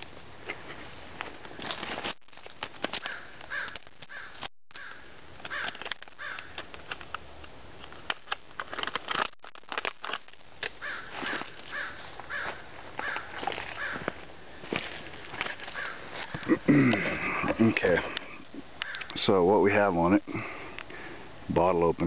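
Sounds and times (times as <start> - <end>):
packaging clicking and crinkling: 1.2 - 7.2, 7.8 - 12.4, 13.0 - 16.5
crows cawing: 3.0 - 6.6, 10.8 - 14.2, 15.6 - 17.6, 18.8 - 19.2.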